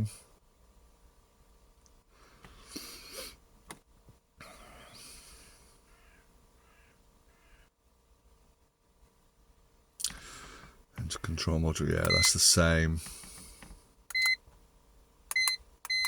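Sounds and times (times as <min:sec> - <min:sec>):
faint bird calls: 0:05.8 - 0:07.8.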